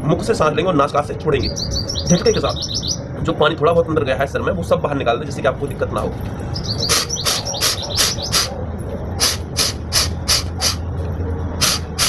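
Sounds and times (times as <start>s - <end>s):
forceful nasal exhalations: 9.2s - 10.9s.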